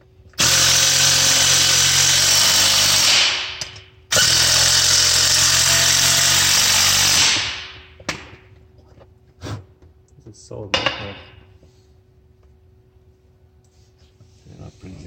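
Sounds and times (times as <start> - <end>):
power tool driving bolts: 0.4 - 7.8.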